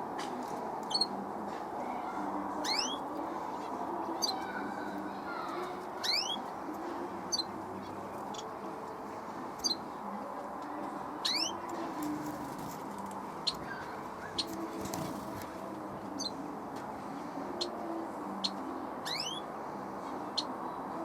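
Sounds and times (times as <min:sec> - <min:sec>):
small birds chirping: 0:00.9 - 0:01.1, 0:02.6 - 0:06.6, 0:07.3 - 0:08.6, 0:09.6 - 0:10.0, 0:11.2 - 0:16.4, 0:17.6 - 0:19.4, 0:20.1 - 0:20.6
sweeping bird calls: 0:02.6 - 0:03.0, 0:06.0 - 0:06.4, 0:11.2 - 0:11.6, 0:13.4 - 0:14.7, 0:18.4 - 0:19.4.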